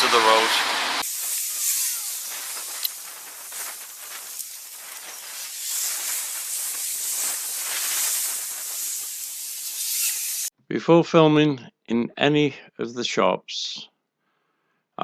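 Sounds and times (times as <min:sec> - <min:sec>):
street ambience hiss: 0:00.0 - 0:10.5.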